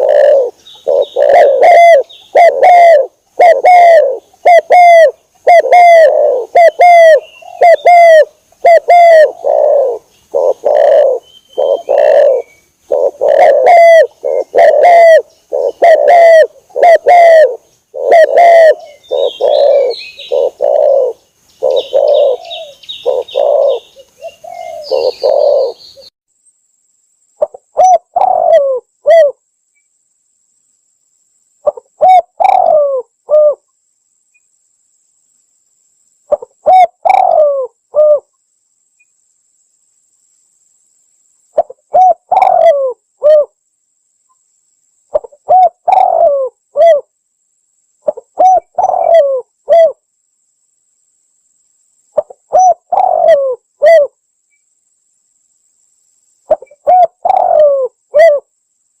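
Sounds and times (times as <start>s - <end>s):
dove cooing: 0.0s - 26.1s, 27.4s - 29.4s, 31.6s - 33.6s, 36.3s - 38.3s, 41.6s - 43.5s, 45.1s - 47.1s, 48.0s - 50.0s, 52.2s - 54.1s, 56.5s - 58.5s.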